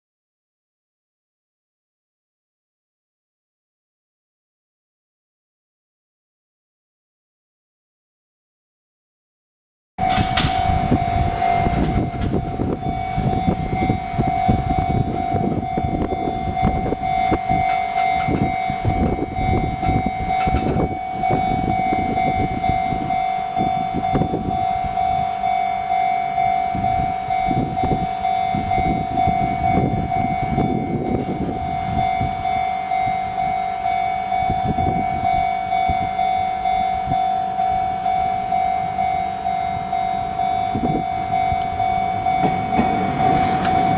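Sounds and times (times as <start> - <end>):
level-crossing alarm dinging: 10.0 - 43.9
train rumbling and clattering: 10.0 - 43.9.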